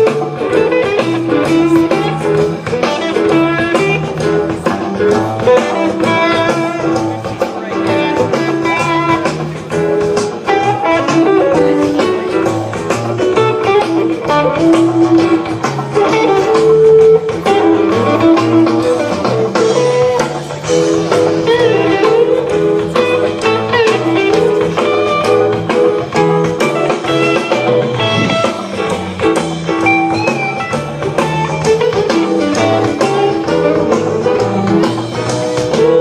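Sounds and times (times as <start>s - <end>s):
rock band playing live: 0.0s - 36.0s.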